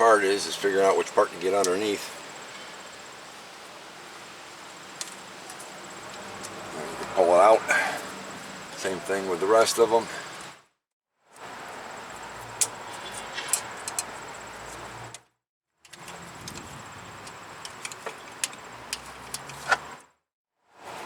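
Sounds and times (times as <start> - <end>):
background hiss: 0.0 - 10.6.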